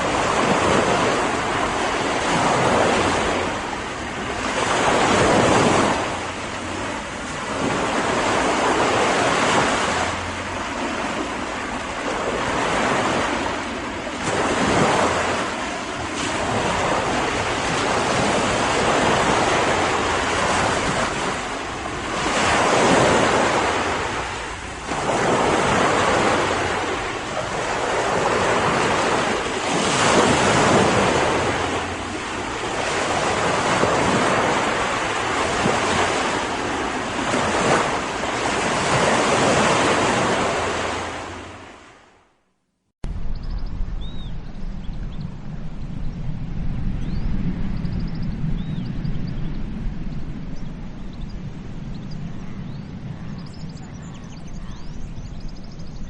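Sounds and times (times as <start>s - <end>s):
ocean waves breaking on beach: 0.0s - 42.3s
wind: 0.0s - 56.0s.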